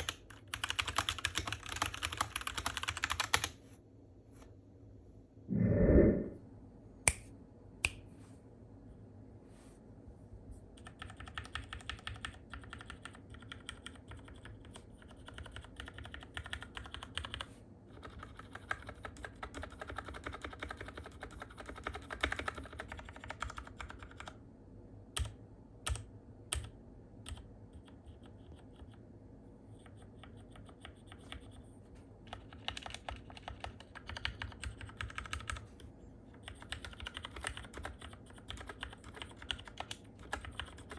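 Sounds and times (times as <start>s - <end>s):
mechanical keyboard typing: 0.0s - 3.5s, 10.8s - 24.4s, 25.2s - 28.9s, 32.3s - 35.7s, 36.3s - 40.9s.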